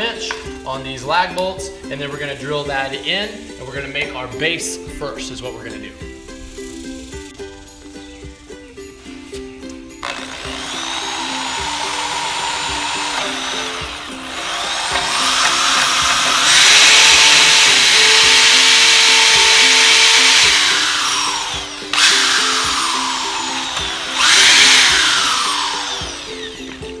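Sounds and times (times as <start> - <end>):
background music with plucked melody: 0.0 - 27.0
power drill boring into wood: 10.0 - 27.0.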